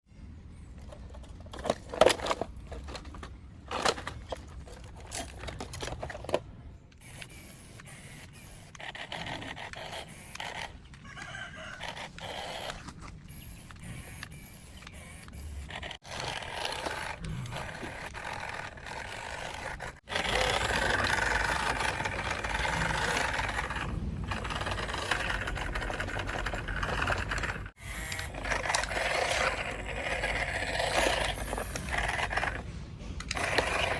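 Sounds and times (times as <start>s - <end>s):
toy truck scraping and whirring: 0.6s - 33.9s
plastic parts knocking: 0.9s - 6.5s.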